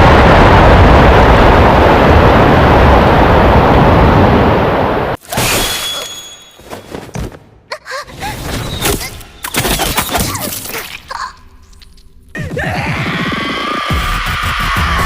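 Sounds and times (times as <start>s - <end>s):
music: 12.4s - 15.0s.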